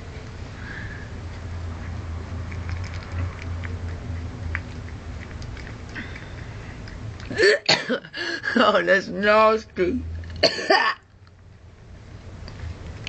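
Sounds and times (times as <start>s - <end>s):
steady low hum: 0.0s - 13.0s
cat chewing wet clicks: 1.3s - 7.3s.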